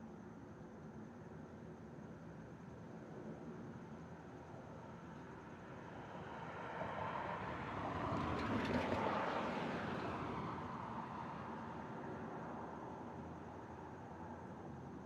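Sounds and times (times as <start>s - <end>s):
road vehicle passing by: 6.5s - 11.8s.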